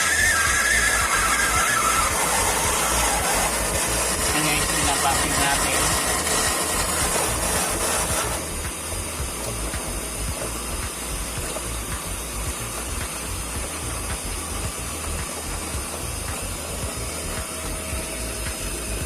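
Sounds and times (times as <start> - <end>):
low rumble: 8.2 - 19.0.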